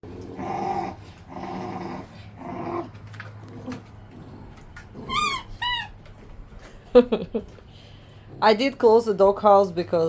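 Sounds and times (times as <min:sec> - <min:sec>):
puppies growling: 0:00.0 - 0:06.0
puppy yelps: 0:05.0 - 0:06.0.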